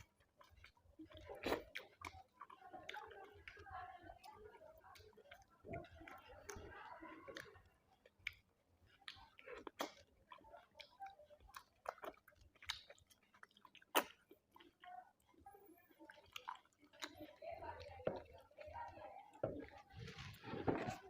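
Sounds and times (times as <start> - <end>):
wet mouth clicks and smacks: 0.0 - 3.6, 7.3 - 14.9
person chewing food: 0.0 - 21.0.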